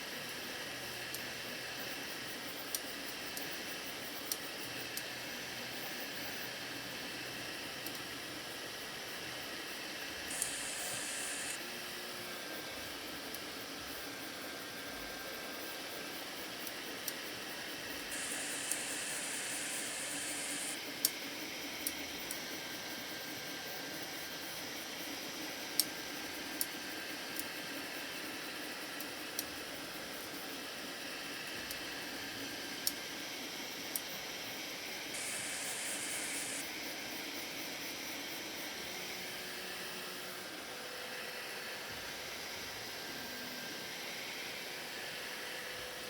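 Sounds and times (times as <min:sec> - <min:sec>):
printer fan hiss: 0:09.3 - 0:11.6, 0:15.5 - 0:39.6
brighter higher hiss: 0:10.3 - 0:11.6, 0:18.1 - 0:20.8, 0:35.1 - 0:36.6.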